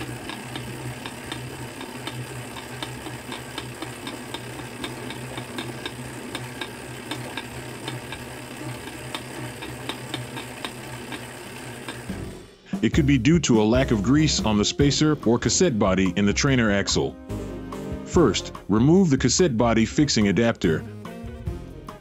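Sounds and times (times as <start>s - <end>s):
flywheel humming: 0.0s - 12.5s.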